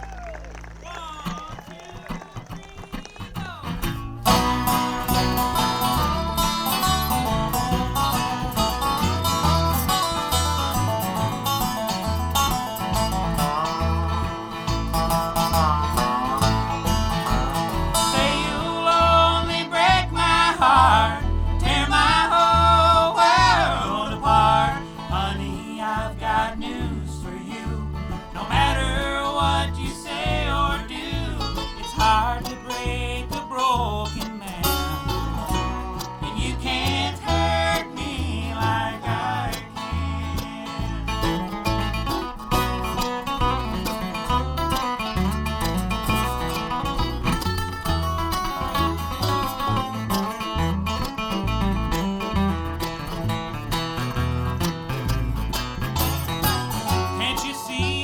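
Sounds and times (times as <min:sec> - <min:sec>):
bluegrass band playing: 0:00.0 - 0:58.0
banjo picking: 0:03.6 - 0:58.0
sliding lead melody: 0:04.2 - 0:32.8.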